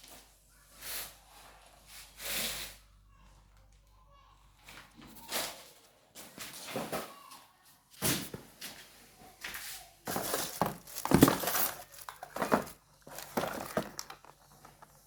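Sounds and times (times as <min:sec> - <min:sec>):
crinkling and rustling handling noise: 0:03.1 - 0:15.0.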